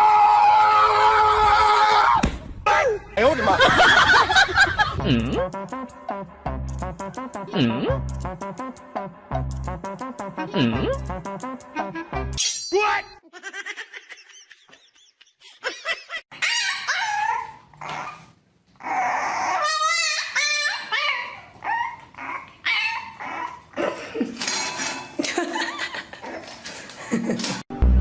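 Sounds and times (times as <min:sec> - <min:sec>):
dog barking and whining: 0:16.3 - 0:23.7.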